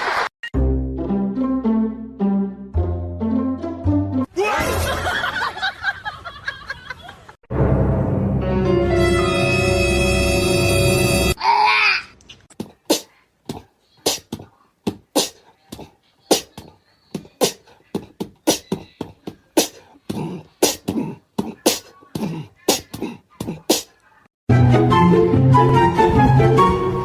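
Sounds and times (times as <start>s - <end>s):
sharp dry taps: 12.5s - 23.9s.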